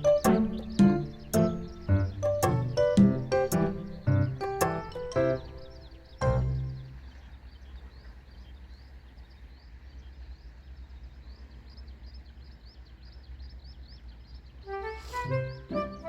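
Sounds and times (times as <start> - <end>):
birds chirping: 0.0 - 16.0
music note: 14.7 - 16.0.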